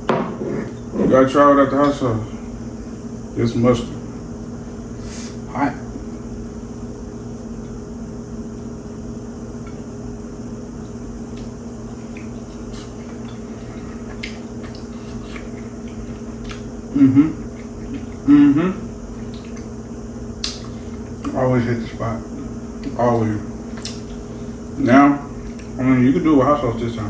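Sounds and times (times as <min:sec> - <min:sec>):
man humming mmm: 0:16.8 - 0:19.0.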